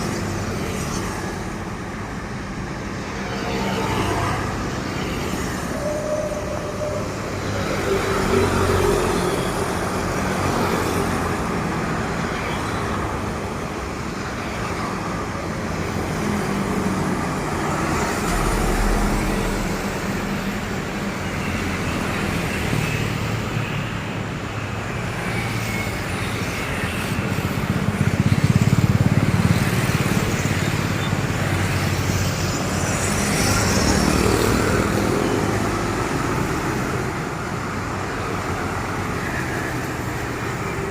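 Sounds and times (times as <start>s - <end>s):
heavy trucks passing: 15.0s - 25.1s.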